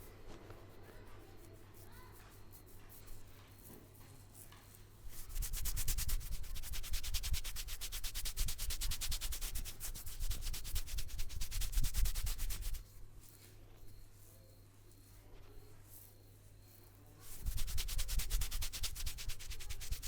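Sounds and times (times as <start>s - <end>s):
hands rubbing briskly: 5.0s - 12.8s, 17.2s - 20.0s.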